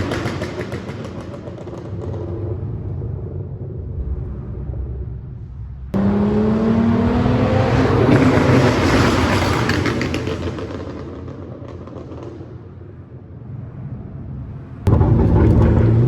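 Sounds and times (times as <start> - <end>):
exhaust crackles and pops: 0.0 - 6.0, 7.9 - 13.2, 14.8 - 16.0
car engine accelerating hard: 5.9 - 11.0.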